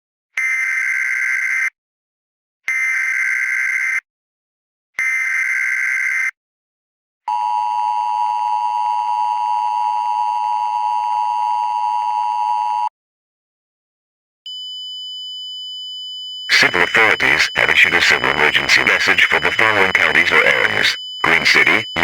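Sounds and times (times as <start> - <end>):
buzzy two-tone alarm: 14.5 - 22.0
steady high tone: 16.5 - 22.0.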